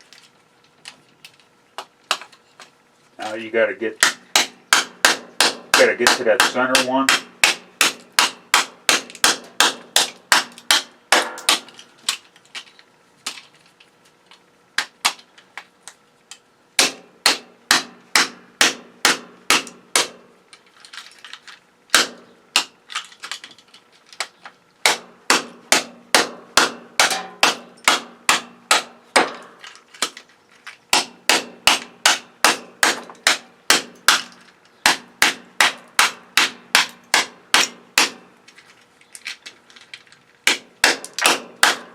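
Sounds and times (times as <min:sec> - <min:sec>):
hammer blows on circuit breaker: 0:04.0 - 0:11.8, 0:24.8 - 0:30.2, 0:30.9 - 0:38.2, 0:40.5 - 0:41.9.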